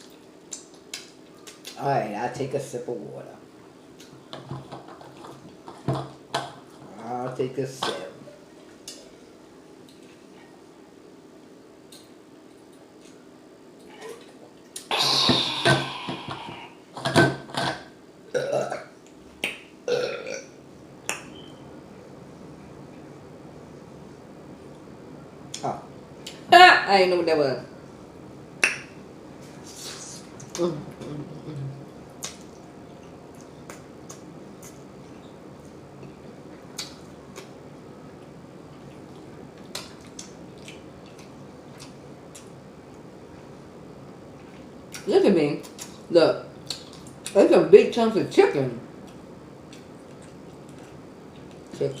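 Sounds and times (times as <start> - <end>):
woman burping: 14.9 - 16.6, 17.6 - 18.9, 19.9 - 20.5
wet mouth smacking while chewing: 38.8 - 42.5.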